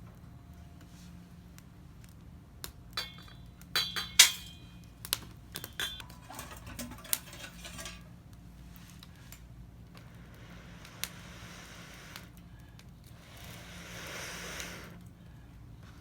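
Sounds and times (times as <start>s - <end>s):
metal cookware clinking: 3.0s - 4.9s, 5.6s - 8.1s
clatter and rustling: 5.5s - 9.1s.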